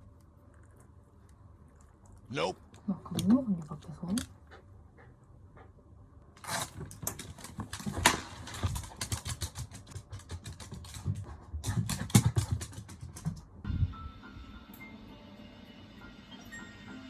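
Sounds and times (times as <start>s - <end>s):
dog chewing and crunching: 0.1s - 5.2s.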